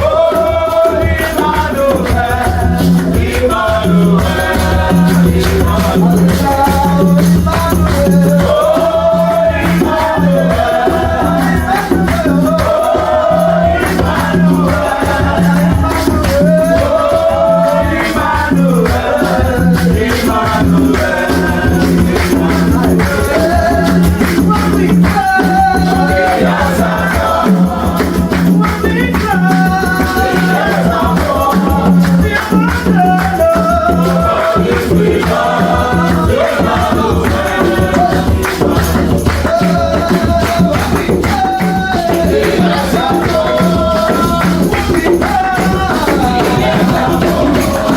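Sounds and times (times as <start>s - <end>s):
gospel worship music: 0.0s - 47.9s
rattling shaker: 0.0s - 47.9s.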